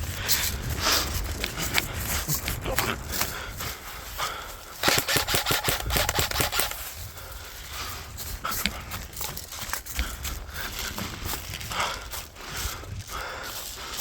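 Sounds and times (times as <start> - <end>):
steady low rumble: 0.0 - 13.9
airsoft gun firing: 4.8 - 6.8
sharp clicks: 4.8 - 6.8.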